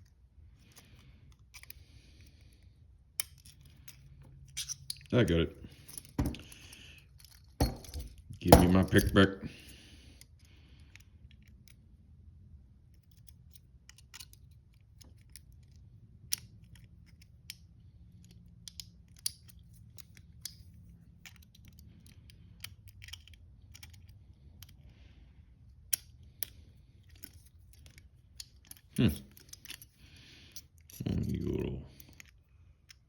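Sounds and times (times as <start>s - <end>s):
lock pick clicking in a keyhole: 12.9s - 20.6s.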